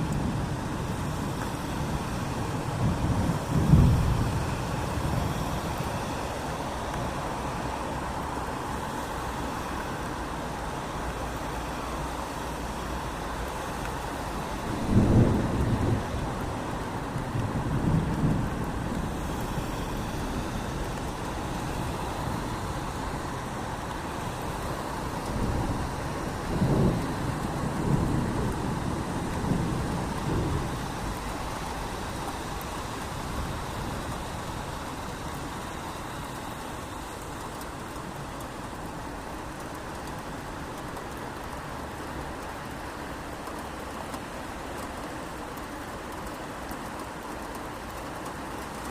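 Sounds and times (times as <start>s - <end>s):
low thunder rumbles: 0.0s - 5.5s, 14.6s - 19.2s, 25.2s - 31.7s
steady rain falling: 0.0s - 48.9s.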